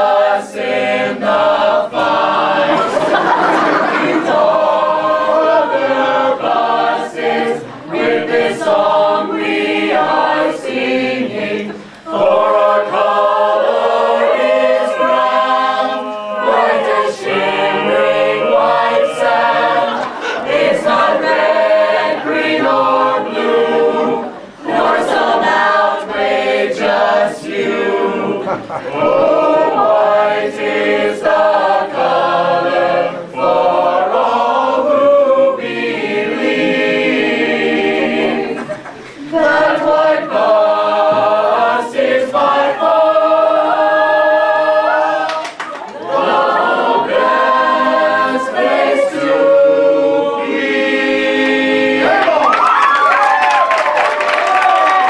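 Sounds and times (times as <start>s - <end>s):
choir singing a cappella: 0.0s - 52.5s.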